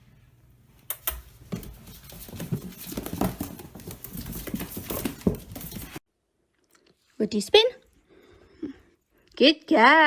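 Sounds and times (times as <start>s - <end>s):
dog paws tapping and scuffling: 0.8s - 6.0s.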